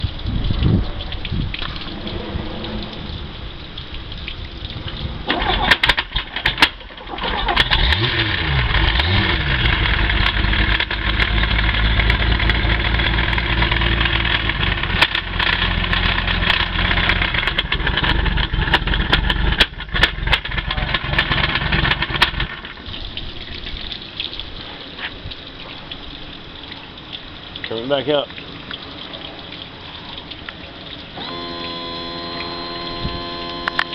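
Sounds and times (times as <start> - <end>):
knocking and grinding gears: 5.3 - 22.9
boat engine running: 7.2 - 22.7, 31.2 - 33.9.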